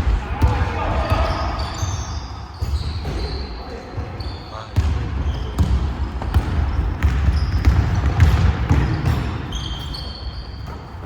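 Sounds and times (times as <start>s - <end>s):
basketball bouncing on court: 0.0s - 3.4s, 4.8s - 11.0s
shoe squeaks: 1.1s - 5.6s, 7.2s - 7.7s, 8.7s - 11.0s.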